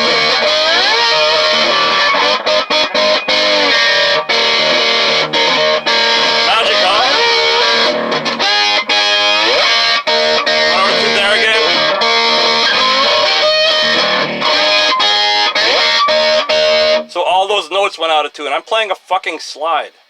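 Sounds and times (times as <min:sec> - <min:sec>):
slide electric guitar: 0:00.0 - 0:17.2
person speaking: 0:06.3 - 0:07.4, 0:10.6 - 0:11.9, 0:17.1 - 0:20.0.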